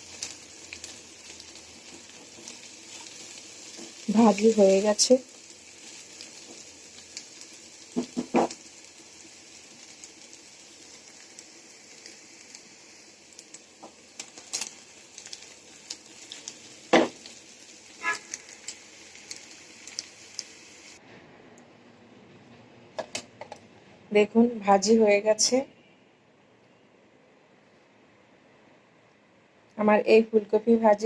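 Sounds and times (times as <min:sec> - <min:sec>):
food sizzling in a frying pan: 0:00.0 - 0:21.0.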